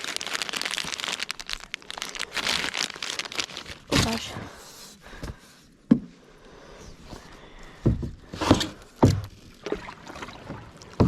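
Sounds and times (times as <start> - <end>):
dull knocks in boat: 7.9 - 9.3.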